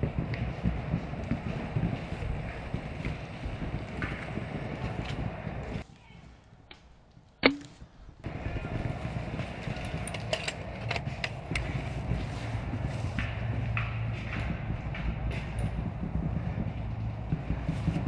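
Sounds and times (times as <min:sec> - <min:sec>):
wind on microphone: 0:00.0 - 0:05.8, 0:07.8 - 0:18.0.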